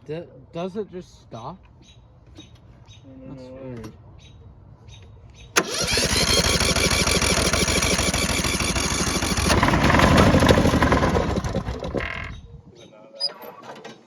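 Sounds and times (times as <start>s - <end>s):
riding lawnmower engine running: 5.6s - 12.6s.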